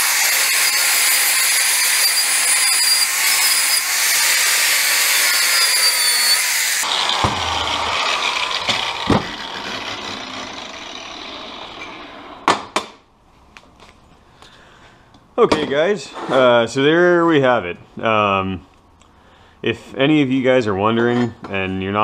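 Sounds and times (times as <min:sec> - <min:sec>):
angle grinder cutting metal: 0:00.0 - 0:12.5
sharp knocks: 0:07.1 - 0:07.8, 0:08.7 - 0:09.4.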